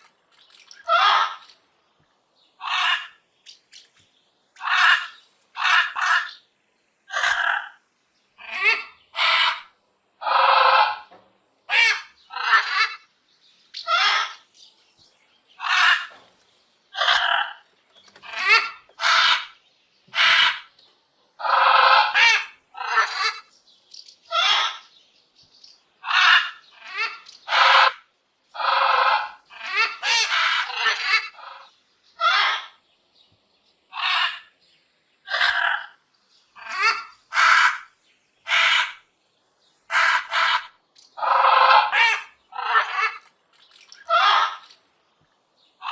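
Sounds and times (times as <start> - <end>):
parrot squawking: 0.8 - 1.4, 2.6 - 3.2, 4.6 - 6.4, 7.1 - 7.8, 8.4 - 11.1, 11.7 - 13.1, 13.8 - 14.4, 15.6 - 16.1, 17.0 - 17.6, 18.2 - 20.7, 21.4 - 23.5, 24.3 - 24.9, 26.0 - 28.0, 28.6 - 32.8, 33.9 - 34.5, 35.3 - 36.0, 36.6 - 39.0, 39.9 - 43.2, 44.0 - 44.7.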